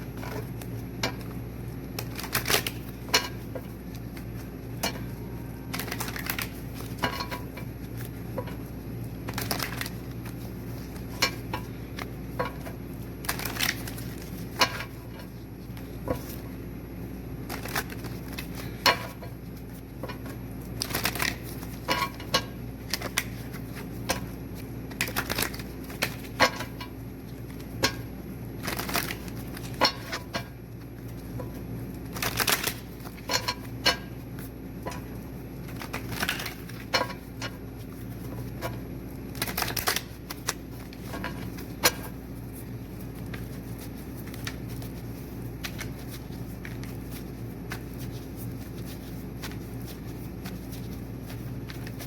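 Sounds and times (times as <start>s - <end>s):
cards being shuffled: 2.0s - 5.1s, 5.7s - 7.0s, 7.9s - 11.1s, 13.2s - 14.5s, 17.4s - 18.8s, 20.7s - 21.8s, 22.8s - 26.3s, 28.6s - 29.8s, 30.8s - 34.5s, 35.6s - 36.9s, 39.3s - 52.0s.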